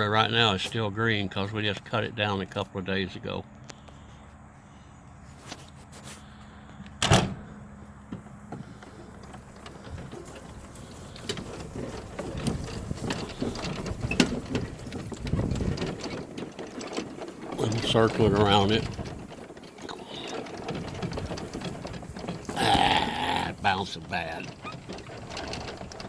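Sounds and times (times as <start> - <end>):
golf cart motor hum: 6.4 - 26.0
cart rattling and bumping: 7.5 - 26.0.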